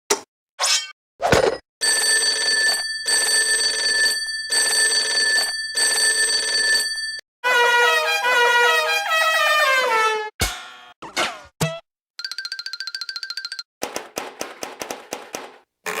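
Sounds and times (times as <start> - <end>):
electric bell ringing: 1.8 - 7.2.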